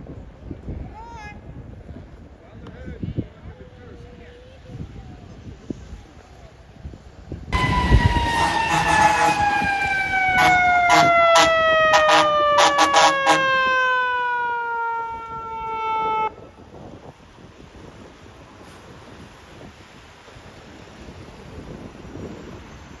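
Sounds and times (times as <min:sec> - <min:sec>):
fire truck siren winding down: 0:07.5 - 0:16.8
short air horn blasts: 0:07.6 - 0:13.9.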